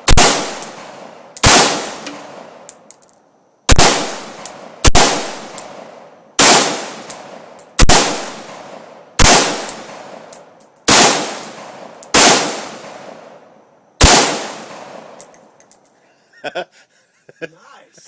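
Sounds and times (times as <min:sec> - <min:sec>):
rifle shots with echo: 0:00.0 - 0:02.7, 0:03.7 - 0:10.3, 0:10.9 - 0:13.4, 0:14.0 - 0:15.3.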